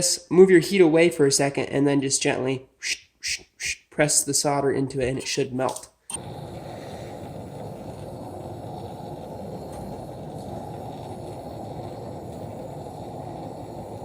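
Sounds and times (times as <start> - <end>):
gas torch flame roaring: 6.1 - 14.0.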